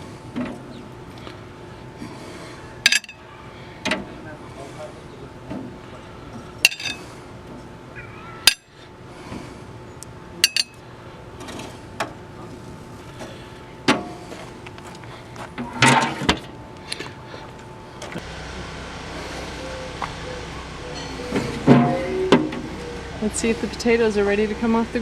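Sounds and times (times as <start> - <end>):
utensils clinking on metal grill: 2.9 - 3.2, 6.6 - 7.0, 8.5 - 8.7, 10.4 - 10.8.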